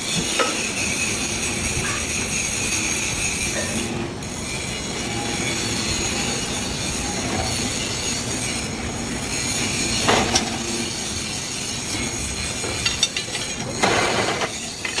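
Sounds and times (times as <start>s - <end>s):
machine whine: 0.0s - 15.0s
sharp metal clank: 12.7s - 15.0s.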